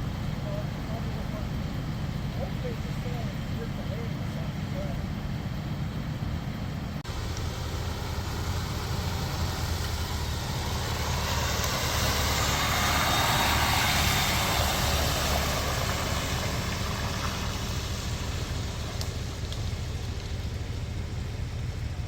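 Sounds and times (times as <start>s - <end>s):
vehicle engine idling: 0.0s - 22.0s
broad rushing noise: 6.8s - 20.6s.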